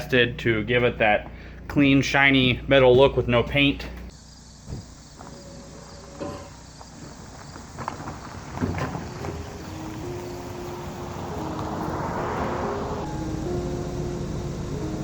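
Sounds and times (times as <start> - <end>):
electronic melody notes: 9.6 - 15.0
rising whoosh: 9.7 - 14.9.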